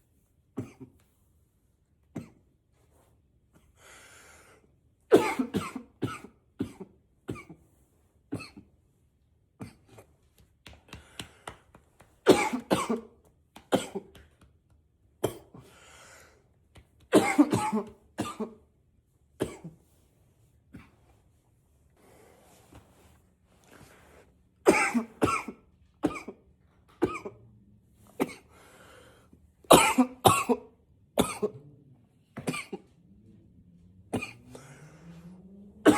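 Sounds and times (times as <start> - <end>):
man coughing into a pillow: 0.6 - 1.0, 5.1 - 7.6, 8.3 - 8.7, 12.2 - 14.2, 15.2 - 15.7, 17.1 - 18.6, 19.4 - 19.8, 24.6 - 27.5, 28.2 - 28.5, 29.7 - 31.7, 32.4 - 33.0, 34.1 - 34.6.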